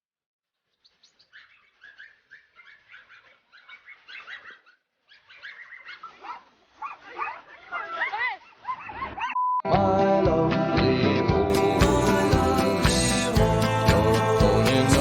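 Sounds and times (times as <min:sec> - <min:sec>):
birds chirping: 0:00.7 - 0:09.4.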